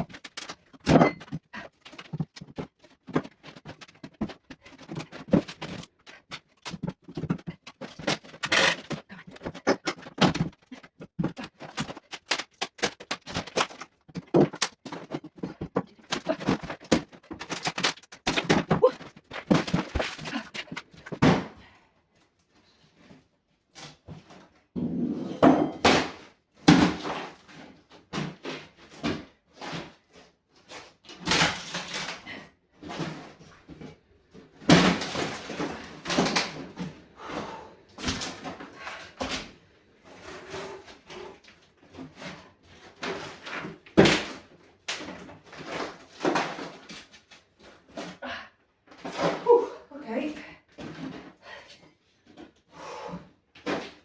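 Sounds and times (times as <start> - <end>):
wooden floorboards being pried up: 0.0 - 21.7, 23.0 - 48.2, 52.2 - 54.0.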